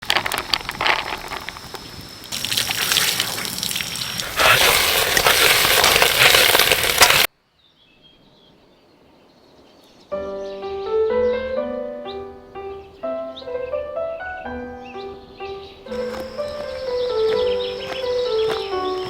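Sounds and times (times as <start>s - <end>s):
food sizzling in wok: 1.4s - 7.3s.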